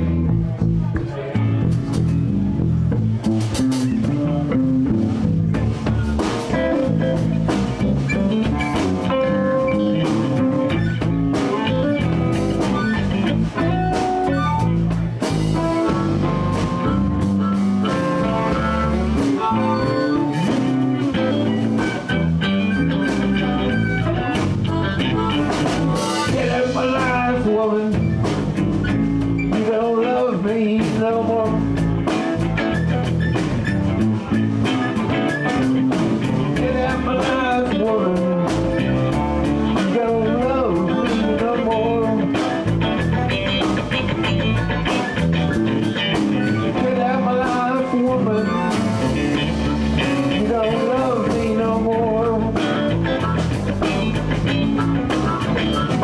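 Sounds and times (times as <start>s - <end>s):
bass guitar: 0.0s - 56.0s
drum kit: 0.0s - 56.0s
electric guitars: 0.0s - 56.0s.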